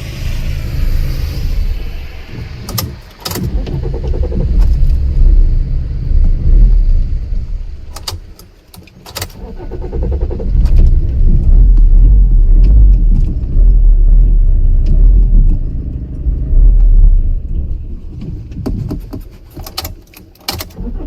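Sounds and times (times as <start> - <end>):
car engine stalling and restarting: 0.0 - 21.0
starter motor cranking: 2.4 - 5.2, 7.9 - 11.2
ignition key clicking: 2.6 - 4.9, 7.9 - 9.7, 18.6 - 21.0.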